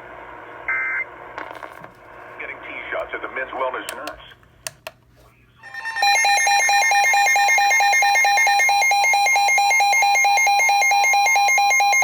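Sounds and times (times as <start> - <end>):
steady alarm tone: 5.6 - 12.0.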